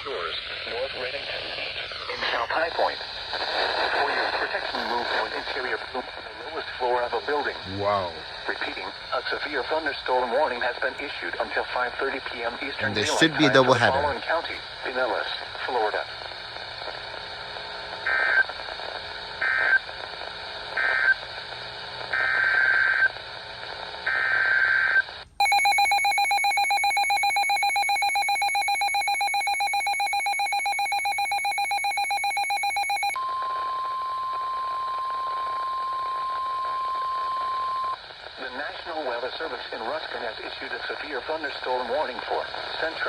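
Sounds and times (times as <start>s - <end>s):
steady warning alarm tone: 25.4s - 33.2s.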